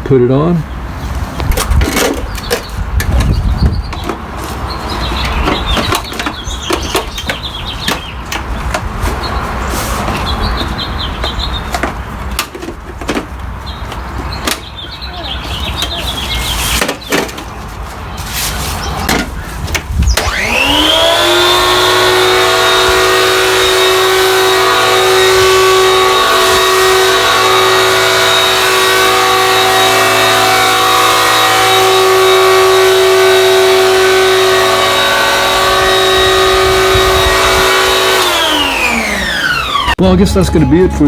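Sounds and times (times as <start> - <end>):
hedge trimmer motor whining: 1.5 - 12.6, 19.8 - 41.0.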